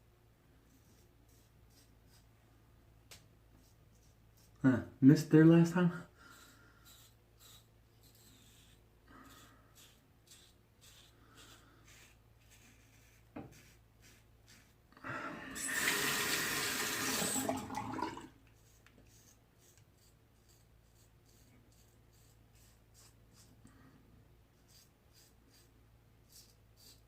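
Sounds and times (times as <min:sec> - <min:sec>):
razor scraping strokes: 0:00.7 - 0:02.3, 0:03.6 - 0:04.6, 0:06.2 - 0:14.8, 0:18.5 - 0:23.6, 0:24.6 - 0:27.0.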